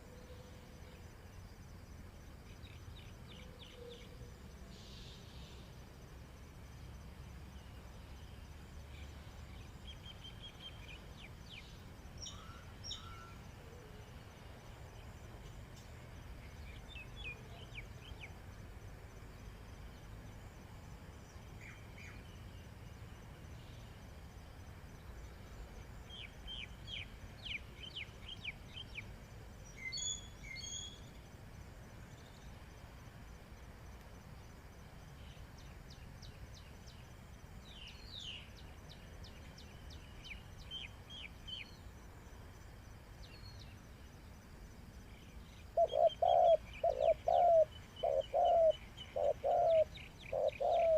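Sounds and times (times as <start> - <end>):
small birds chirping: 7.4 - 18.7, 25.0 - 31.2, 35.1 - 42.0, 43.1 - 44.4, 45.0 - 50.9.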